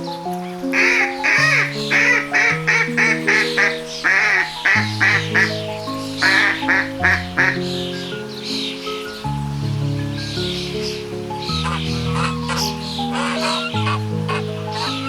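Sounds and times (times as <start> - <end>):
slow held background music: 0.0 - 15.0
quick animal calls: 0.7 - 5.6, 11.6 - 15.0.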